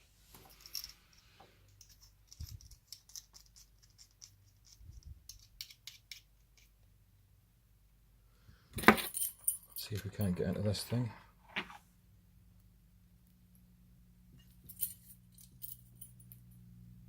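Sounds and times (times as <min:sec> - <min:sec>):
lockpicking tools clicking and scratching: 0:01.7 - 0:06.8.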